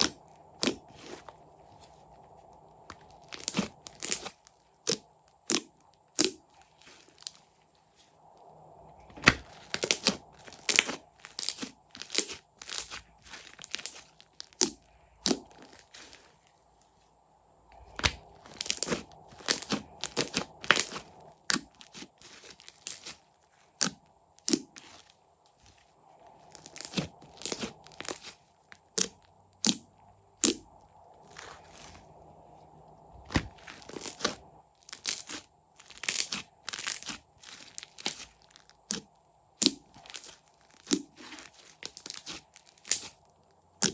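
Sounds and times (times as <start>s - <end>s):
slime crackling and popping: 0.0s - 1.3s, 2.9s - 7.4s, 9.2s - 16.6s, 17.8s - 25.1s, 26.5s - 29.8s, 33.2s - 43.9s.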